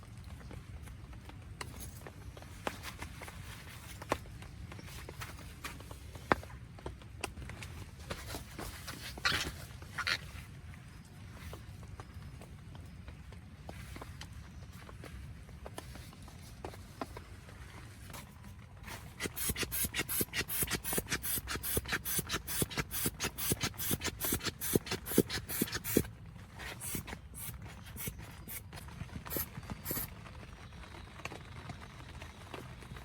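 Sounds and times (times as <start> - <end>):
rhythmic scraping strokes: 19.2 - 26.1, 26.7 - 28.7, 29.3 - 30.1.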